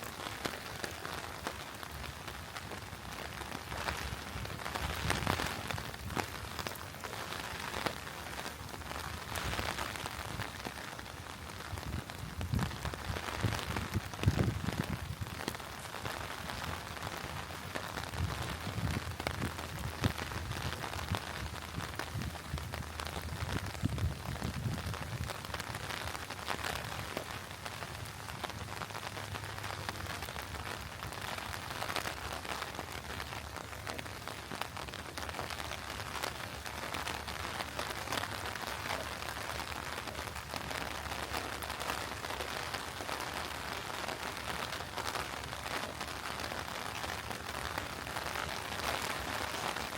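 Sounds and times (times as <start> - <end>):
rain pattering: 0.0 - 49.9.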